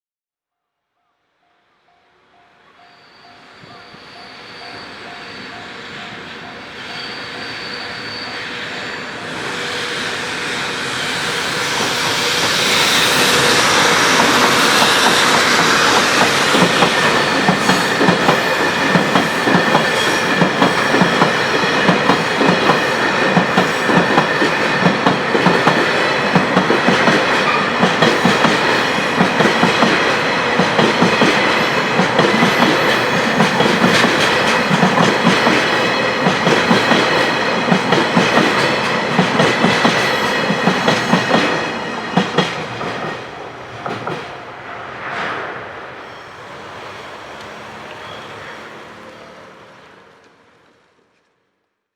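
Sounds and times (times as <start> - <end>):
crossing warning bell: 1.1 - 9.6, 13.1 - 28.2
freight train passing: 1.8 - 51.2.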